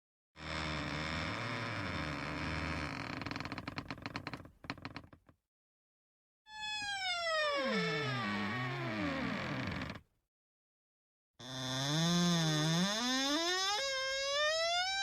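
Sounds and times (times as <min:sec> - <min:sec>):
door hinges creaking: 0:06.6 - 0:10.0, 0:11.5 - 0:15.0.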